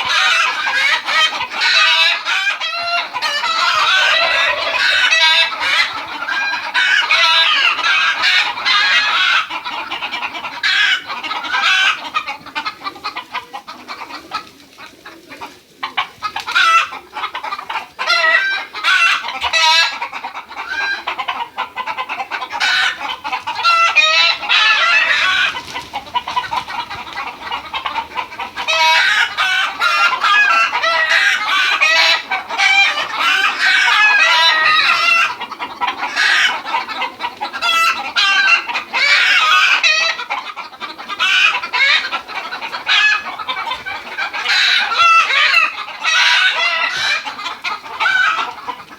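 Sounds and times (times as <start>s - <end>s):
rooster crowing: 0.0s - 9.4s, 23.6s - 25.6s, 28.6s - 35.4s
chickens clucking: 0.0s - 48.9s.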